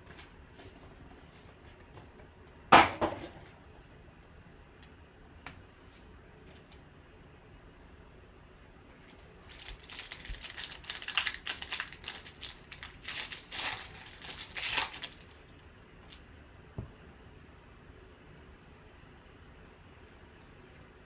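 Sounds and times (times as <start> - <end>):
wrapper crinkling and tearing: 9.0 - 15.6.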